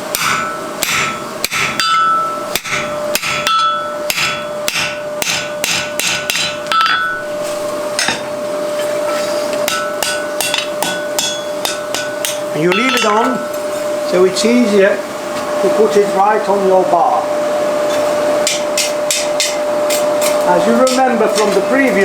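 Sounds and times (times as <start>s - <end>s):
anvil ringing: 0.1s - 7.3s, 9.7s - 13.6s
hammer striking steel on anvil: 0.1s - 7.3s, 9.1s - 13.6s, 18.4s - 21.6s.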